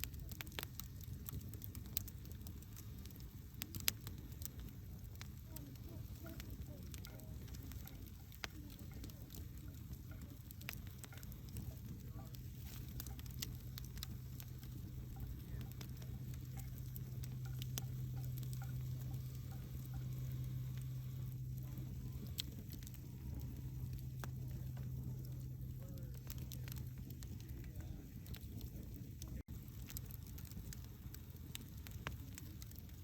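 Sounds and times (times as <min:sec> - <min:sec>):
steady low hum: 0:00.0 - 0:33.0
wood fire crackling and popping: 0:00.0 - 0:33.0
soft hiss: 0:11.4 - 0:27.0.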